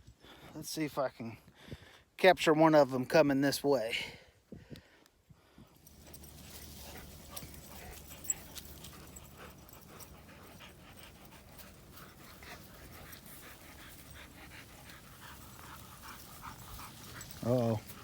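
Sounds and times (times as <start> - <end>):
dog panting: 5.8 - 18.0.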